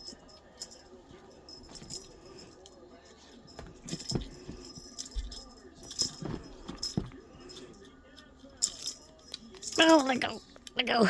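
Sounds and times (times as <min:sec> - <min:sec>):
toy jingling and clinking: 0:00.0 - 0:10.6.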